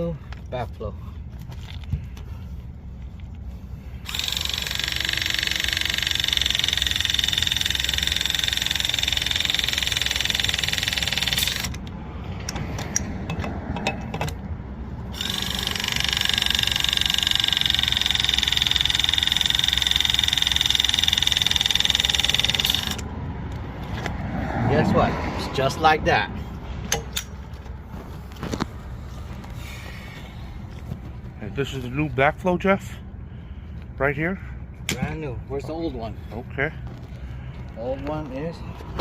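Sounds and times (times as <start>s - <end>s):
pipe press tool motor whine: 4.0s - 11.8s, 15.1s - 23.0s.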